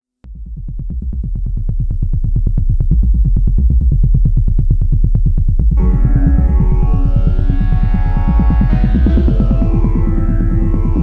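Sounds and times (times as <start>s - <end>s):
fast electronic bass pulse: 0.3s - 11.0s
sustained synth chord: 5.8s - 11.0s.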